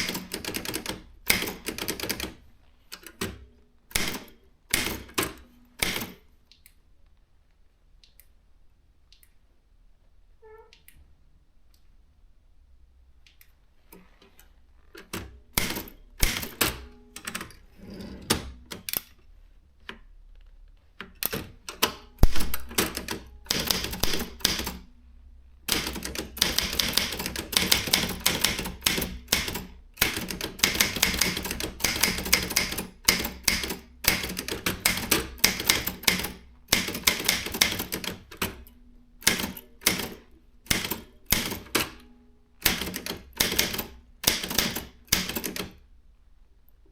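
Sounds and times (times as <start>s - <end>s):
typewriter typing: 0.0s - 2.4s, 3.0s - 6.2s, 15.0s - 17.6s, 21.2s - 24.8s, 25.7s - 42.0s, 42.6s - 45.8s.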